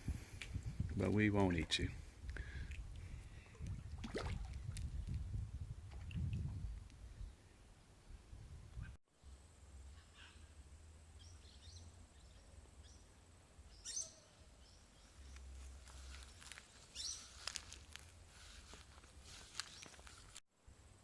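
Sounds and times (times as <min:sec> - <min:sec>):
faint outdoor ambience: 0:06.7 - 0:21.0
soft bird chirps: 0:13.7 - 0:17.5.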